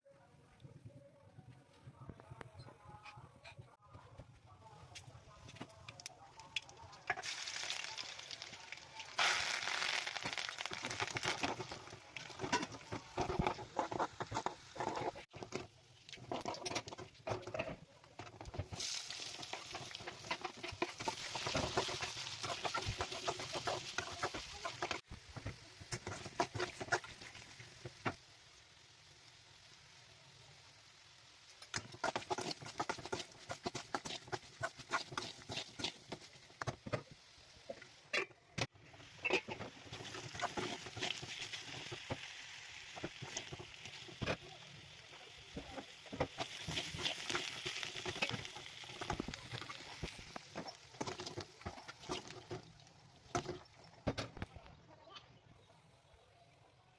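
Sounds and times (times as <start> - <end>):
potatoes sizzling in hot oil: 6.5 - 17.4, 18.2 - 38.1, 38.8 - 54.0
spatula scraping in pan: 16.2 - 27.4, 31.7 - 36.9, 39.0 - 44.4, 45.5 - 52.6.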